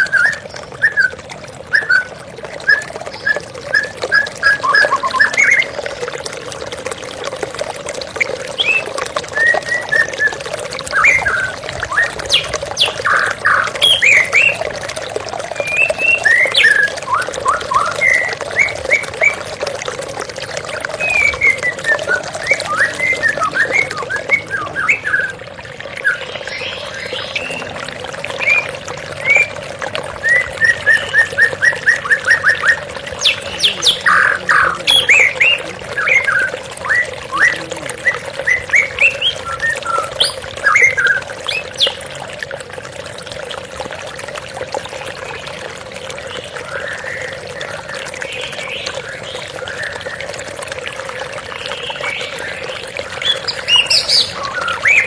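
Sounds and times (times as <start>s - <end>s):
bird singing whistled song: 0.0s - 5.7s, 8.6s - 14.6s, 15.6s - 19.4s, 21.0s - 25.4s, 30.2s - 42.0s, 53.2s - 55.0s
flowing water rushing: 0.0s - 55.0s.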